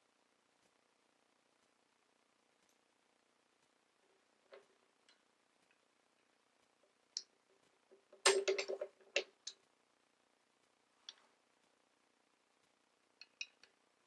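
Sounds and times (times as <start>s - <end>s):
plastic parts clicking and clattering: 8.1s - 9.6s.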